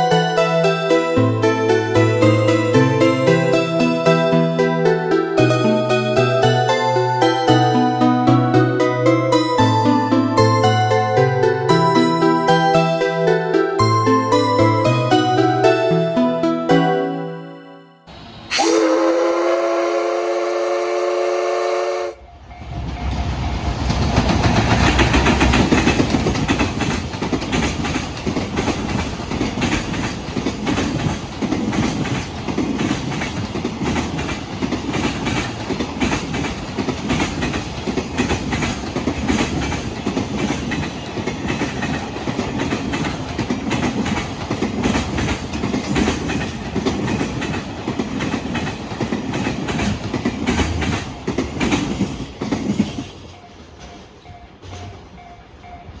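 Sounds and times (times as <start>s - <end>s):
freight train rumbling past: 18.1s - 56.0s
wheels clacking on rail joints: 23.0s - 56.0s.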